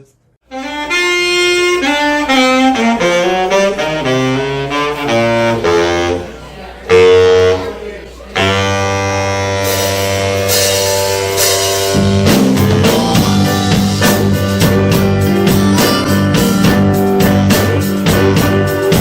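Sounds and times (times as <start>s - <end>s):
rock band playing: 0.5s - 6.3s, 8.4s - 19.0s
drums with steady beat: 9.5s - 19.0s.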